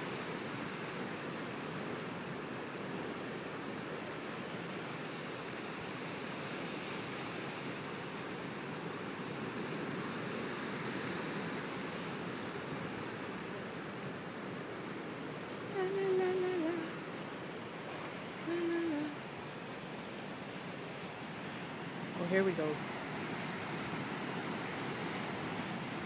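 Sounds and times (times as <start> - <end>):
ocean surf breaking: 0.0 - 26.0
short voice-like sounds: 15.8 - 17.0, 18.4 - 19.2.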